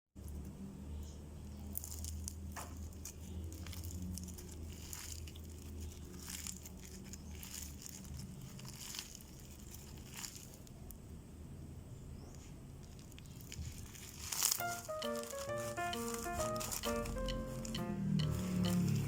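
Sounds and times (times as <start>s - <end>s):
slime crackling and popping: 1.6s - 10.9s, 12.9s - 17.8s.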